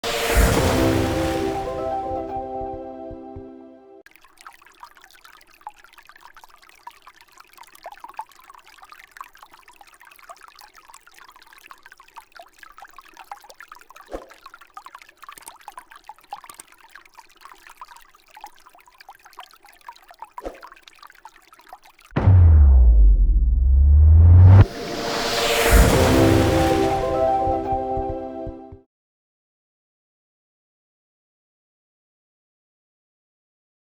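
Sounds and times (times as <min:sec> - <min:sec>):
water trickling and dripping: 0:04.0 - 0:22.4.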